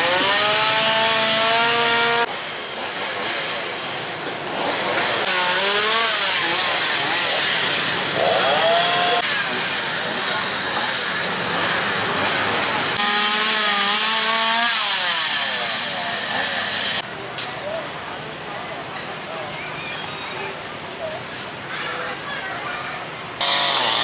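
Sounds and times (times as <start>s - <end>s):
chainsaw cutting and revving: 0.0s - 17.0s, 23.4s - 24.0s.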